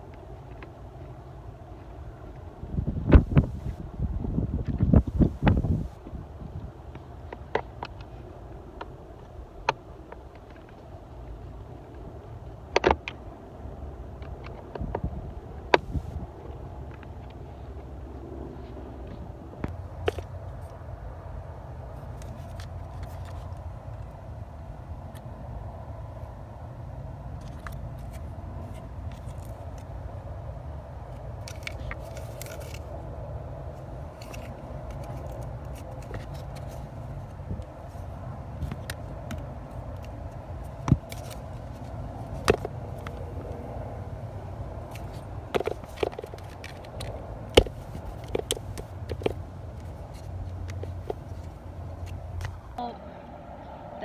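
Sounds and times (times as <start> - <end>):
objects being handled: 19.6 - 20.8, 21.8 - 24.2, 27.2 - 30.1, 31.1 - 52.8.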